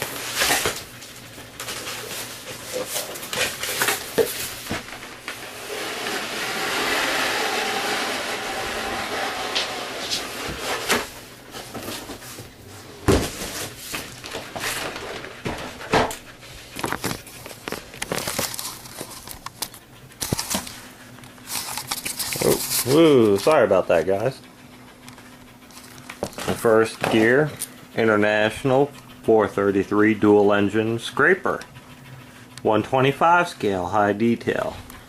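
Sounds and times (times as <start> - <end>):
packaging sliding and scraping: 1.6 - 12.5, 16.8 - 20.8, 21.4 - 23.2.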